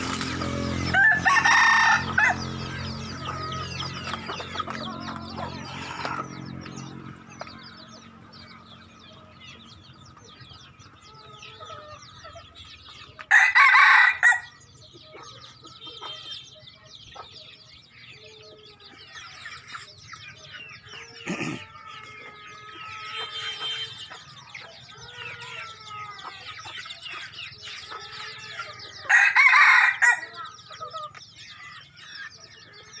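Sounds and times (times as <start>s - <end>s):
small birds chirping: 0.0s - 33.0s
rooster crowing: 0.5s - 2.5s, 13.3s - 14.6s, 29.0s - 30.5s.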